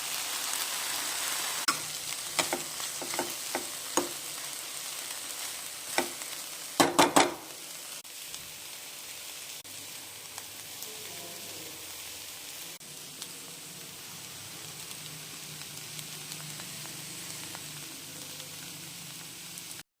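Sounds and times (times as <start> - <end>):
vegetables sizzling in hot oil: 0.0 - 19.8
spoon knocking against pan: 2.4 - 4.2, 6.8 - 7.5.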